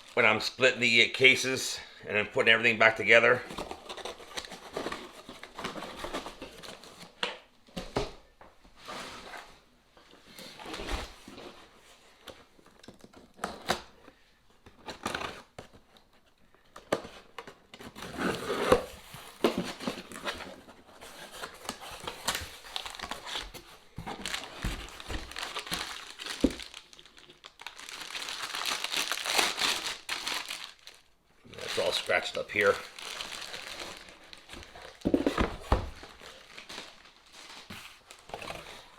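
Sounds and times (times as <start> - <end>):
packaging crinkling and tearing: 0.0 - 0.6, 3.3 - 7.2, 21.1 - 38.9.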